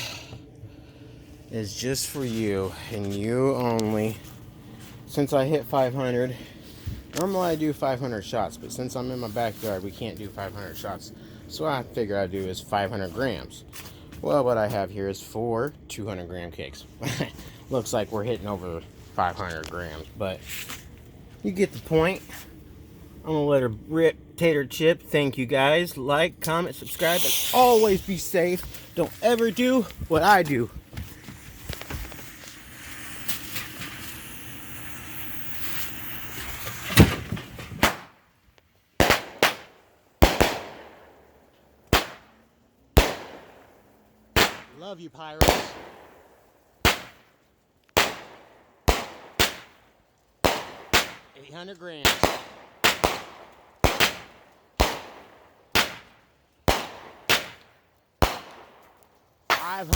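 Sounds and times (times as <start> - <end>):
fireworks shots: 24.7 - 38.3, 39.0 - 49.8, 50.4 - 59.9
fuse fizzing hiss: 26.7 - 37.2.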